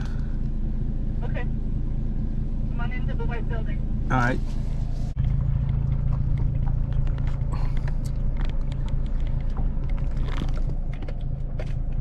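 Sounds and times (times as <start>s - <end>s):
vehicle engine rumbling: 0.0s - 12.0s.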